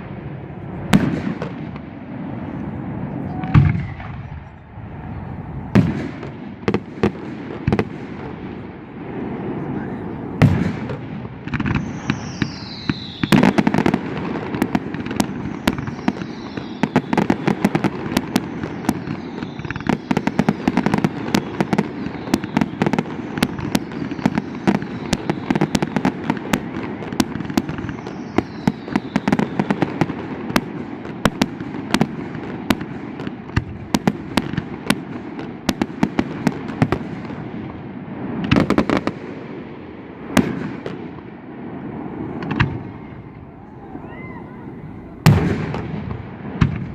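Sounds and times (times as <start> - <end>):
fireworks booms: 0.0 - 46.9
fireworks crackling: 0.0 - 46.9
whistles falling in pitch: 11.8 - 13.6, 15.6 - 17.2, 27.8 - 29.6.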